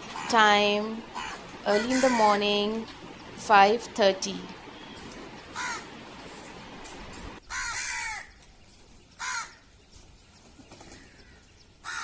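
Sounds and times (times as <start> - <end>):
crows cawing: 0.0 - 0.4, 1.0 - 2.9, 4.7 - 6.2, 7.4 - 8.4, 9.2 - 9.6, 11.0 - 12.0
steady hiss: 0.0 - 7.4.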